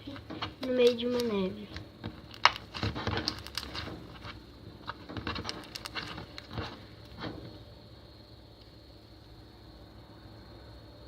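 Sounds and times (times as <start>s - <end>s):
foam slime crackling: 0.0s - 7.4s.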